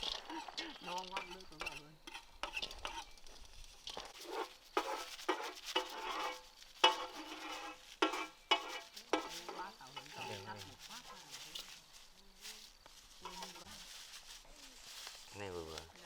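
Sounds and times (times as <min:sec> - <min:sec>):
metal spatula scraping wok: 0:00.0 - 0:11.7.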